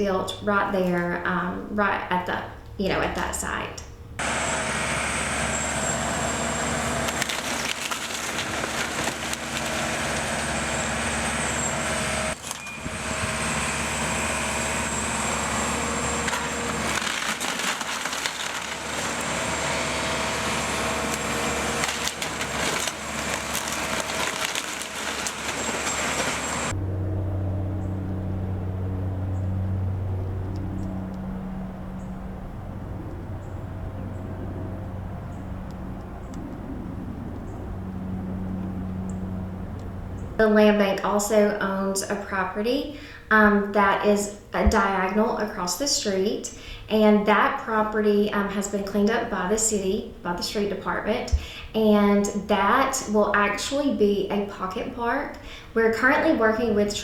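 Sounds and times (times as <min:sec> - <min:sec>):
machine engine: 0:04.2 - 0:40.4
demolition crashing: 0:05.4 - 0:26.7
wood cracking and splintering: 0:05.9 - 0:13.4, 0:14.8 - 0:26.7.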